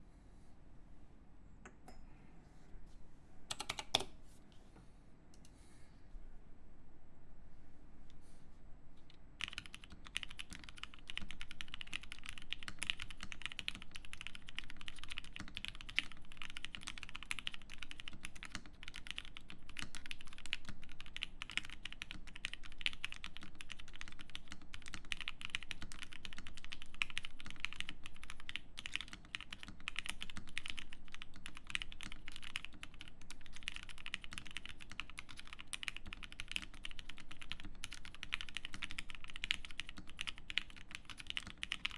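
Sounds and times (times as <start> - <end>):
mechanical keyboard typing: 3.5 - 4.1, 9.4 - 41.9.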